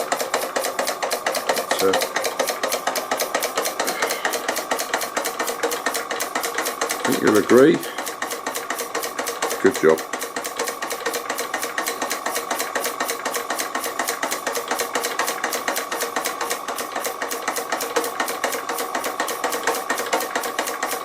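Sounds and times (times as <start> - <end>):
toy steam engine exhaust beating: 0.0 - 21.0.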